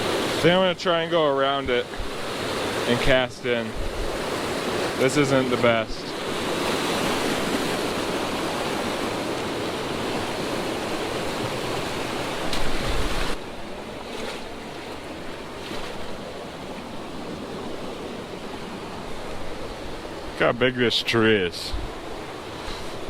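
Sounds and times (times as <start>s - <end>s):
mountain creek water rushing: 0.0s - 23.0s.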